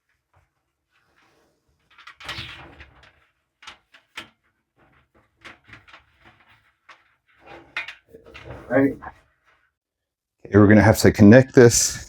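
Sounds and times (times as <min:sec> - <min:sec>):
scraping rub: 0:04.8 - 0:09.8.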